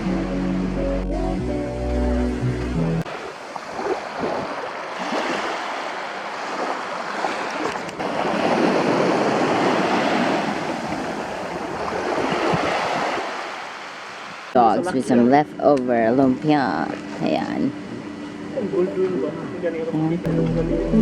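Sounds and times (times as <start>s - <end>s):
sea waves washing onto beach: 3.0s - 14.6s.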